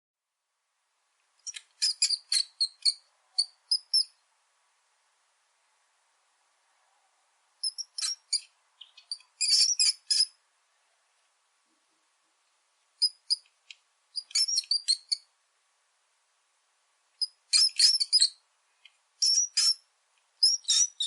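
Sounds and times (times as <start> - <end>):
mouse squeaking: 1.4 - 4.2, 7.6 - 10.4, 13.0 - 13.5, 14.2 - 15.3, 17.2 - 18.4, 19.2 - 21.0.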